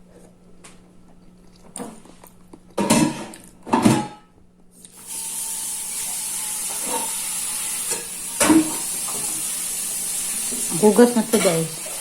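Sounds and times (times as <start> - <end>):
tap water running into sink: 5.0 - 12.0.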